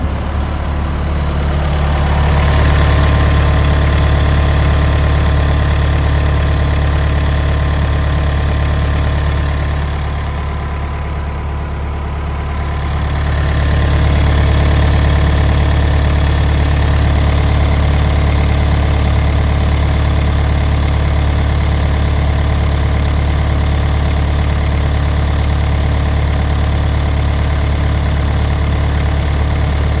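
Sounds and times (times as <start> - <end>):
diesel engine running: 0.0 - 30.0.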